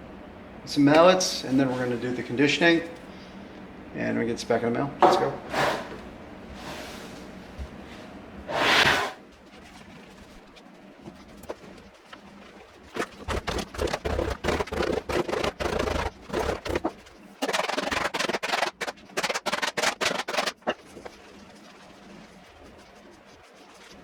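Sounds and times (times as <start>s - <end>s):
mallet pounding leather glove: 13.0s - 16.9s.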